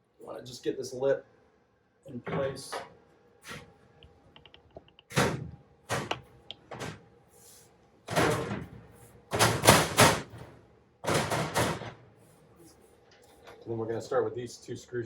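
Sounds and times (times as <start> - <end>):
panel scraping and rattling: 8.1 - 12.0.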